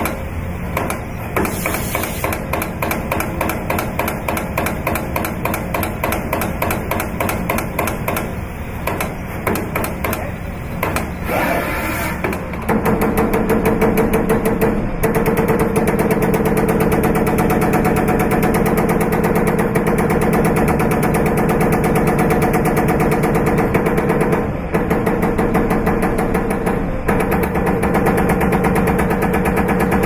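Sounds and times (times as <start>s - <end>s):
machine punching sheet metal: 0.0s - 30.0s
motor hum: 11.0s - 30.0s.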